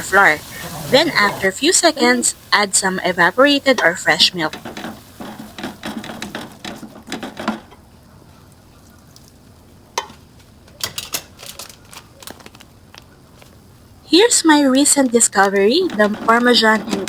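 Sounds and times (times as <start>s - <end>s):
utensil stirring and scraping pan: 0.0s - 7.8s, 15.2s - 17.0s
food sizzling: 0.0s - 17.0s.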